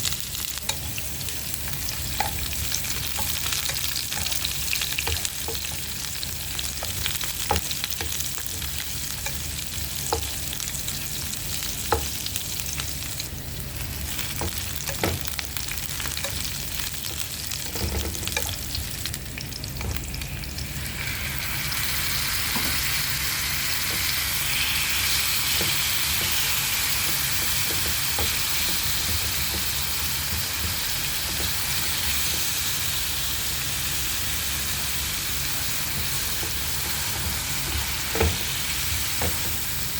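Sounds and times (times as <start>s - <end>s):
food sizzling in a pan: 0.0s - 39.9s
utensil clicking against pan: 1.7s - 11.0s, 11.6s - 12.3s, 14.1s - 18.8s, 25.4s - 32.6s.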